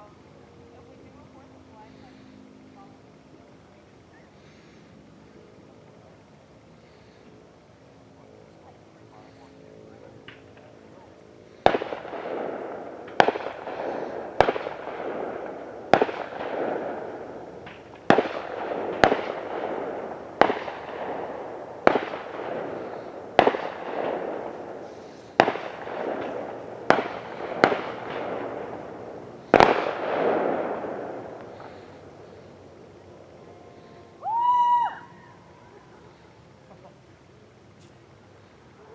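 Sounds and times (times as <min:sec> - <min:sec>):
fireworks bangs with rumble: 0:11.6 - 0:32.0.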